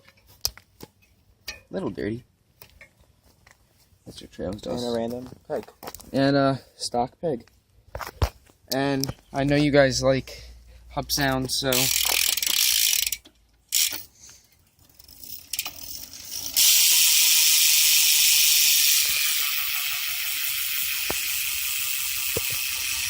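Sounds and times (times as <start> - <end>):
bicycle hub ratchet clicking: 11.7 - 23.0.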